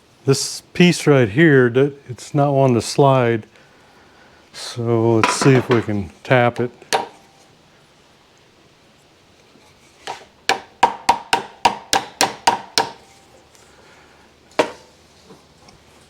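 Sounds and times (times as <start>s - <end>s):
hammer tapping metal: 5.2s - 6.0s, 6.9s - 7.3s, 10.1s - 13.1s.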